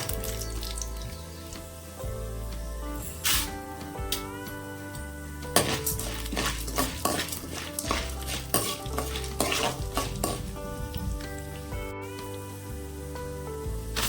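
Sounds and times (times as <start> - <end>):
background music: 0.0 - 14.0
oil sizzling: 0.0 - 14.0
ladle scraping frying pan: 5.6 - 11.7.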